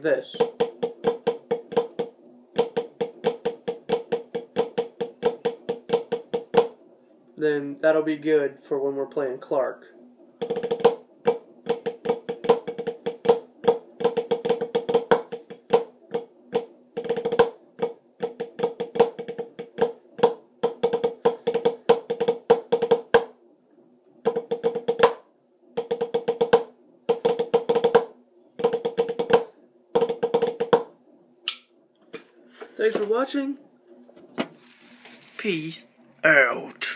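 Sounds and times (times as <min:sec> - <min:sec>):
snare drum rudiments: 0:00.0 - 0:06.8, 0:10.4 - 0:23.3, 0:24.2 - 0:25.2, 0:25.8 - 0:30.9.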